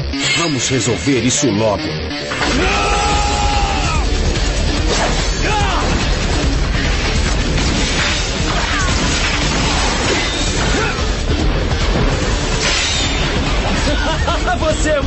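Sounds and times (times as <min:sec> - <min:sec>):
loud background music: 0:00.0 - 0:15.0
fight hits and crashes: 0:04.6 - 0:14.0.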